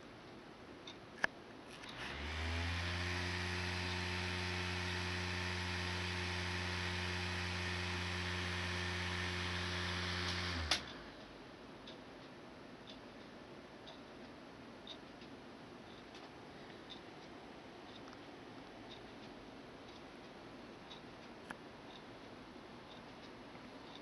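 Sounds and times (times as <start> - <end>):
computer fan humming: 0.0 - 24.0
computer power switch click: 10.2 - 11.0.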